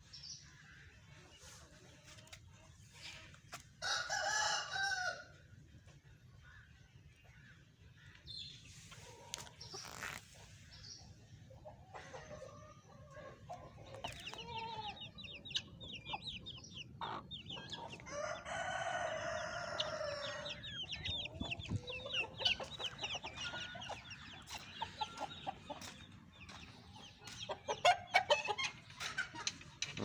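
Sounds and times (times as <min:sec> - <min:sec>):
rooster crowing: 0:03.8 - 0:05.3, 0:18.1 - 0:20.5
fowl clucking: 0:15.6 - 0:19.0, 0:19.6 - 0:30.0.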